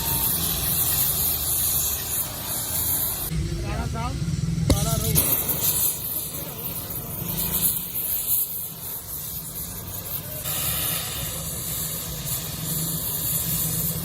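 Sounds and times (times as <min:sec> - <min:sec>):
low hum: 0:00.0 - 0:08.1
steady hissing noise: 0:00.0 - 0:14.0.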